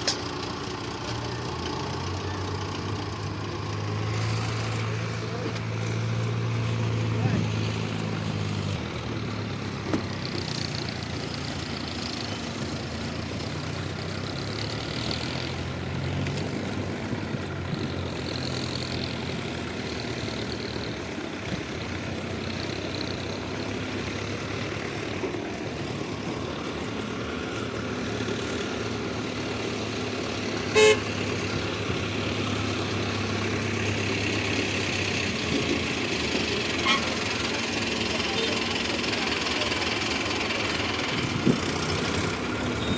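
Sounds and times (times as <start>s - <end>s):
diesel engine running: 0.0s - 42.9s
horn toot: 30.7s - 31.2s, 36.8s - 37.3s.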